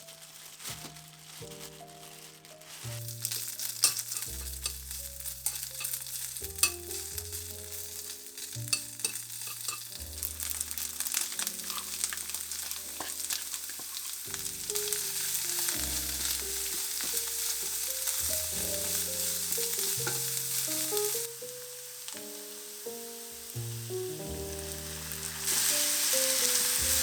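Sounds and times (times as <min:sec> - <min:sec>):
food sizzling in a pan: 0:00.0 - 0:27.0
utensil clicking against pan: 0:03.4 - 0:07.2, 0:08.5 - 0:10.0.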